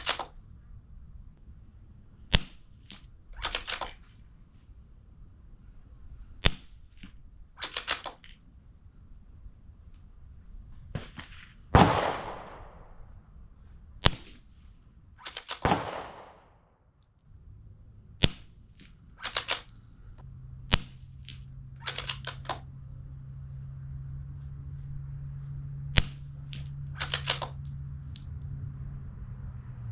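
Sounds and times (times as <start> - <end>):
rifle bolt clicks: 0.0 - 0.6, 2.3 - 4.2, 6.4 - 8.4, 15.2 - 17.2, 18.2 - 20.0, 20.7 - 22.6, 26.0 - 28.5
suppressed rifle shots: 2.3 - 4.1, 6.4 - 8.3, 10.9 - 13.2, 14.0 - 14.5, 15.2 - 16.6, 18.2 - 19.8, 20.7 - 22.7, 25.9 - 27.7.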